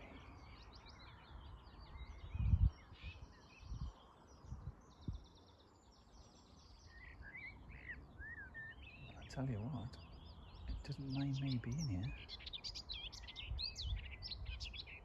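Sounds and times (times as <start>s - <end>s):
songbirds singing and twittering: 0.0s - 15.0s.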